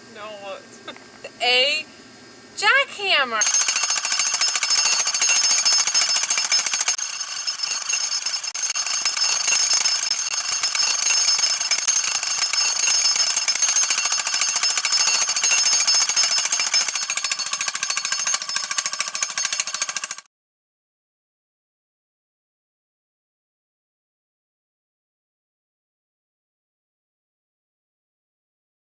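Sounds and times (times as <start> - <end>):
high steady ringing tones: 2.6 - 20.2
jackhammer hammering: 2.7 - 20.3.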